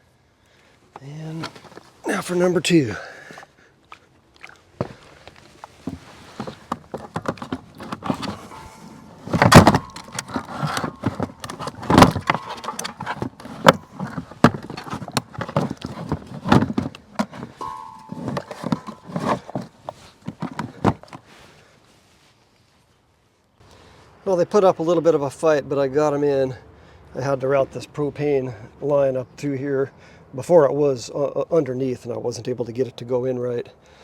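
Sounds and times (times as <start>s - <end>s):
heavy battery knocks and clunks: 5.8s - 21.2s.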